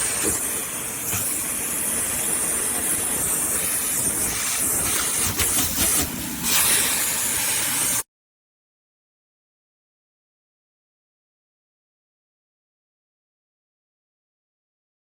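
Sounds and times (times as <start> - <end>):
handheld vacuum running: 0.0 - 8.0.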